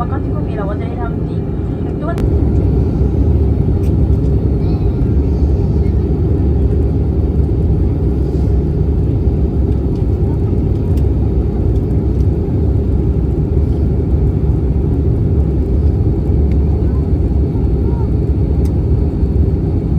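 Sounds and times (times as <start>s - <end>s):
airliner cabin engine rumble: 0.0s - 19.9s.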